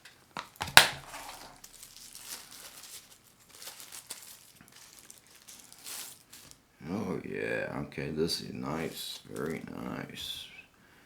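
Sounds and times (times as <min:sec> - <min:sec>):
plastic packaging crinkling: 0:00.0 - 0:06.7, 0:08.8 - 0:09.8.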